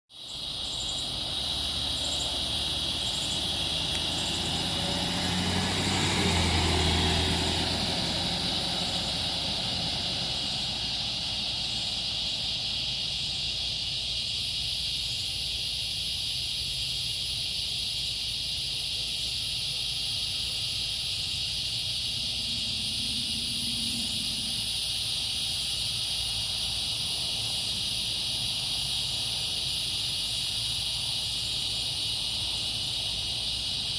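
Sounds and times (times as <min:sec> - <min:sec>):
insect chorus: 0:00.1 - 0:33.9
vehicle passing: 0:00.6 - 0:13.6, 0:20.7 - 0:33.9.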